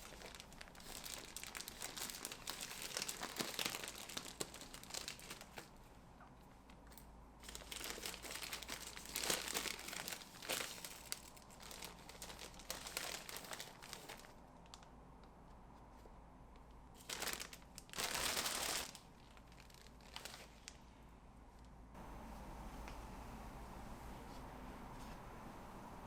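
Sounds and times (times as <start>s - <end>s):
packaging crinkling: 0.0s - 5.8s, 6.7s - 14.8s, 17.0s - 20.8s.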